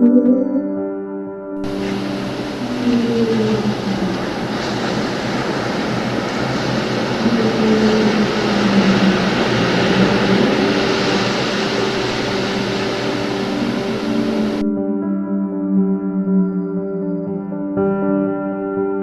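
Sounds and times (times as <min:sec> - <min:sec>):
slow ambient music: 0:00.0 - 0:19.0
steady rushing noise: 0:01.6 - 0:14.6.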